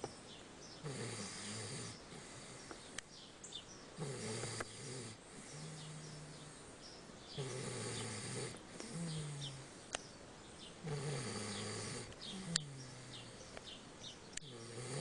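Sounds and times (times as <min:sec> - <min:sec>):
heavy snoring: 0:00.8 - 0:02.7, 0:04.0 - 0:06.7, 0:07.3 - 0:09.8, 0:10.8 - 0:13.5, 0:14.4 - 0:15.0.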